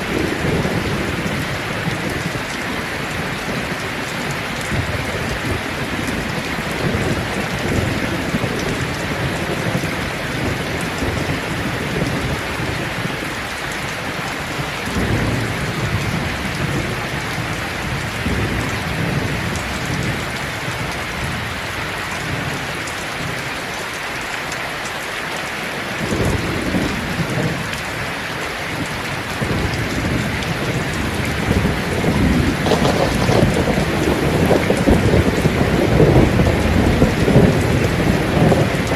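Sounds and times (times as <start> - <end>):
thunder rumbling: 0.0 - 13.1, 28.8 - 38.9
rain falling on leaves: 0.0 - 38.9.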